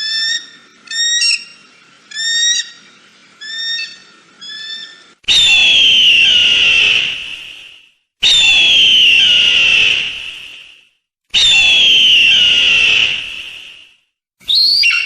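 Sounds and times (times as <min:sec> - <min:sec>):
eagle calling: 0:00.0 - 0:02.8, 0:03.4 - 0:05.1, 0:14.5 - 0:15.0.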